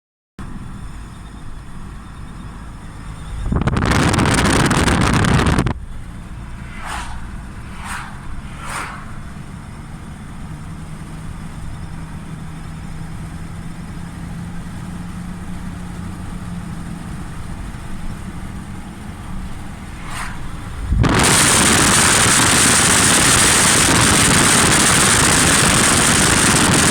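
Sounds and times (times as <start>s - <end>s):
loud rushing noise: 3.7s - 10.4s, 18.6s - 26.9s
steady low background: 5.8s - 10.0s.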